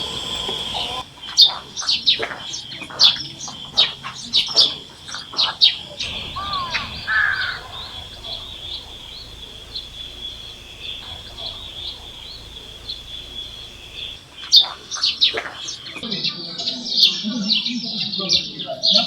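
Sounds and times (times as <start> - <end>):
birds calling: 0.0 - 16.0
high-pitched drone: 6.0 - 16.0.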